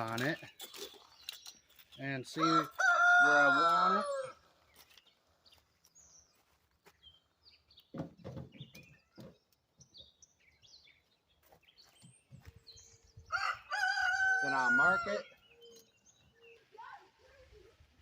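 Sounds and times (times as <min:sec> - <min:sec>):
small birds chirping: 0:00.0 - 0:18.0
rooster crowing: 0:02.4 - 0:04.4, 0:13.3 - 0:15.2.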